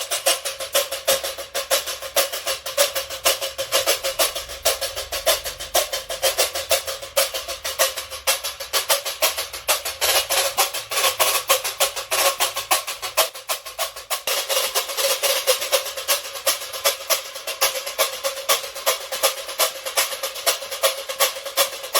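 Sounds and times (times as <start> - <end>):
scraper rhythm: 0.0 - 21.9.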